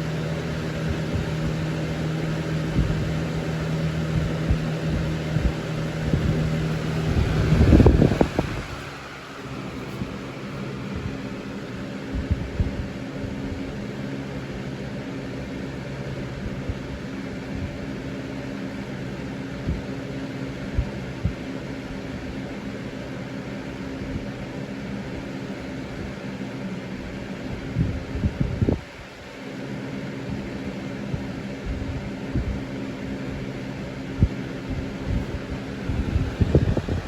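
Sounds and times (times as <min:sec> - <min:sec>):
soft low bumps: 0:00.0 - 0:12.9, 0:34.2 - 0:37.0
box fan running: 0:00.0 - 0:37.0.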